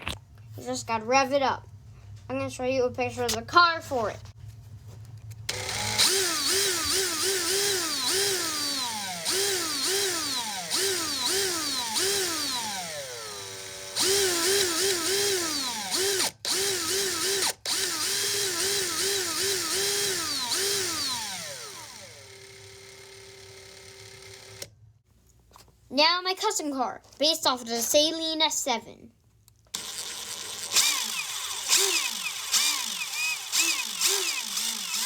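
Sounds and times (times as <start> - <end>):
cordless drill motor revving: 5.5 - 24.7, 29.8 - 35.0.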